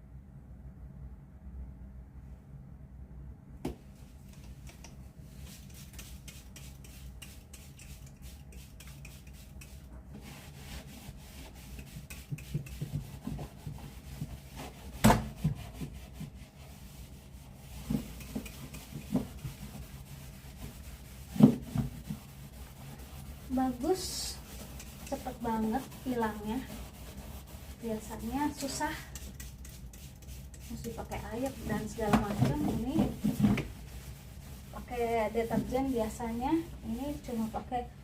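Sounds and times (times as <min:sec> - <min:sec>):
cloth wiping a fridge surface: 0:05.3 - 0:37.8
knocks against a fridge: 0:15.0 - 0:15.3.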